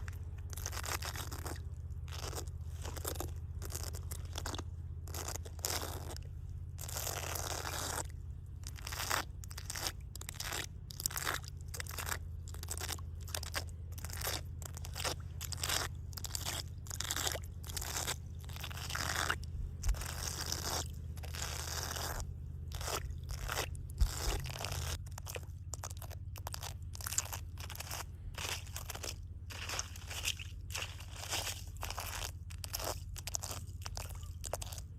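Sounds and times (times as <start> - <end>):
steady low hum: 0.0 - 34.9
water splashing: 28.4 - 34.9.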